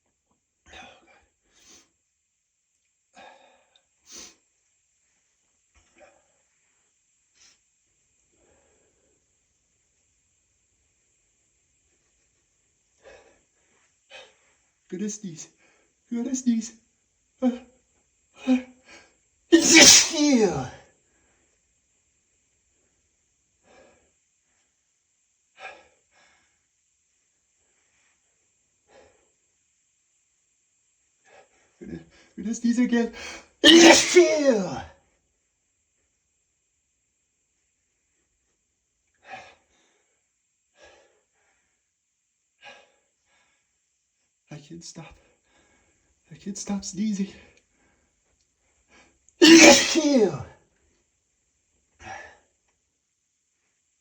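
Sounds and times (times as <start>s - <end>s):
man sniffing: 4.1s - 4.4s, 19.5s - 20.8s, 33.6s - 34.8s, 49.4s - 50.5s
man breathing out heavily: 19.6s - 20.7s
man breathing faintly: 23.6s - 24.8s, 39.1s - 42.0s, 42.6s - 43.8s.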